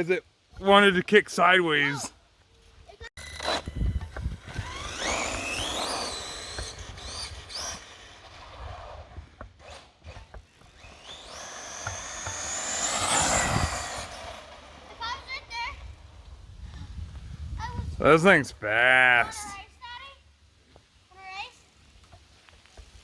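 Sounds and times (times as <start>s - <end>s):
electric motor whining: 3.2s - 9.0s, 10.1s - 15.3s.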